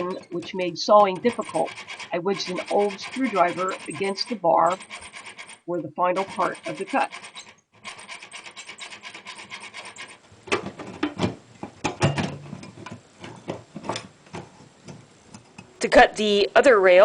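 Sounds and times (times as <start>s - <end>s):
saw rasping through steel: 0.0s - 10.3s.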